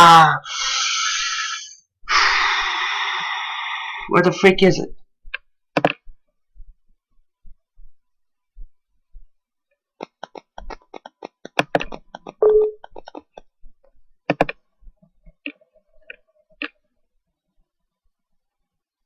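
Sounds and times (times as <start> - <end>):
keyboard and mouse clicks: 5.3 - 6.0, 10.0 - 13.5, 14.2 - 16.8.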